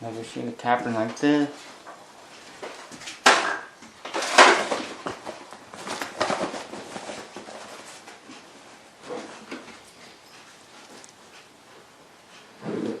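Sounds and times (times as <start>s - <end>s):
rustling and scuffing: 4.2s - 11.9s.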